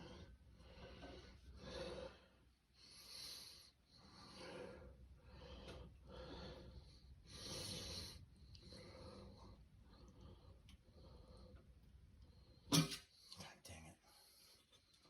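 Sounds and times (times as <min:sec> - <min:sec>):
person breathing heavily: 0:00.0 - 0:11.6.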